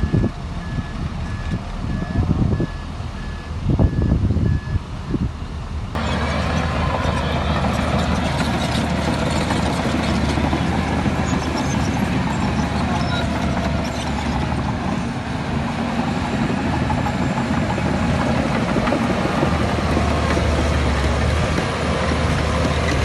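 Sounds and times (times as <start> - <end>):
reversing alarm beeping: 0.0 - 5.2
diesel engine running: 0.0 - 23.0.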